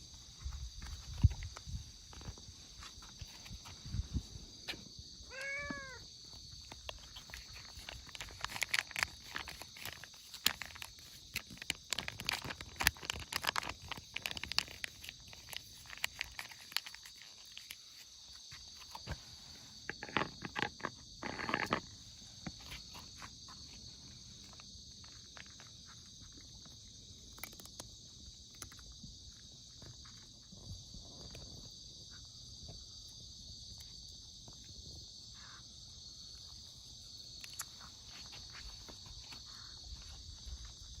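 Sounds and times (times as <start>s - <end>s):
high insect drone: 0.0s - 41.0s
cat meowing: 5.3s - 6.0s
cats crunching dry food: 5.3s - 19.1s, 19.8s - 31.7s, 36.4s - 39.4s.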